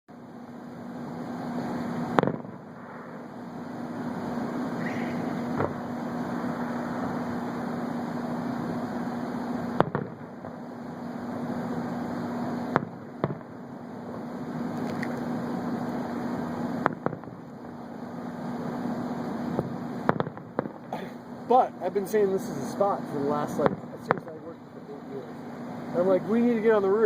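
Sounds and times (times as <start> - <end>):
steady hum: 0.1 - 27.0
fireworks bangs: 1.7 - 3.3, 3.9 - 13.6, 16.0 - 17.4, 18.6 - 21.0, 23.4 - 24.4.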